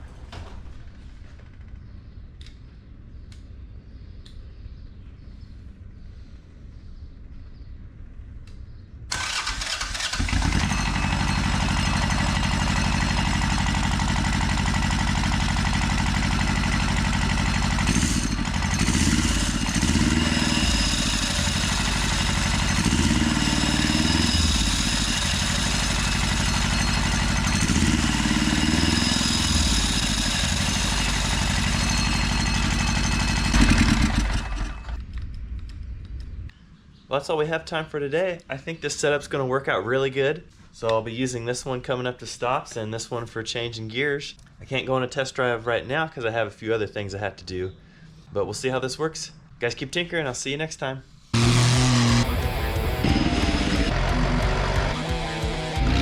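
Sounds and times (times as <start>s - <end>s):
motorcycle diesel engine revving: 9.1s - 35.0s, 51.3s - 56.0s.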